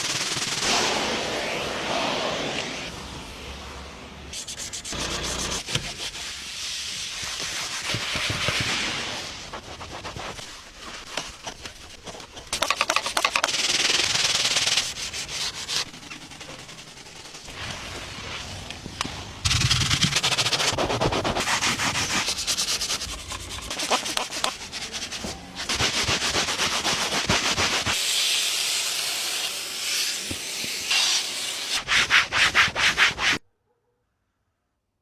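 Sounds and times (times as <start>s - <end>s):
scrubbing car surface: 19.5s - 28.0s.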